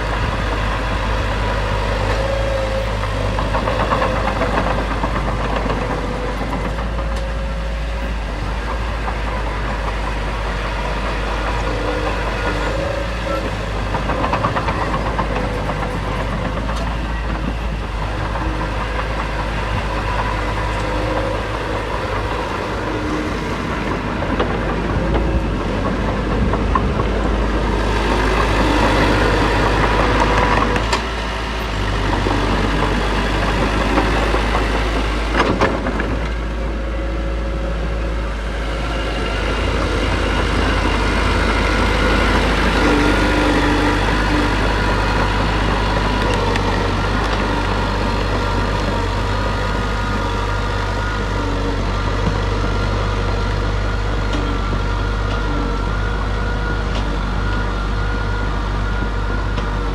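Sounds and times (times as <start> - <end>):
earthmoving machinery diesel engine: 0.0 - 59.9.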